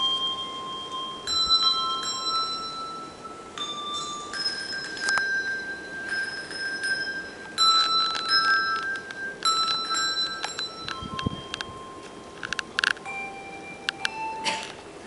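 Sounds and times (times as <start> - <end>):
handbell choir ringing: 0.0 - 14.6.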